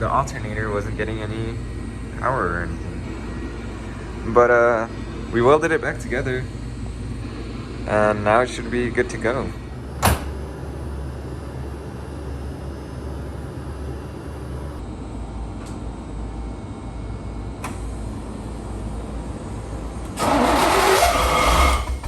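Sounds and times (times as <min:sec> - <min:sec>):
car engine starting: 0:20.1 - 0:22.0.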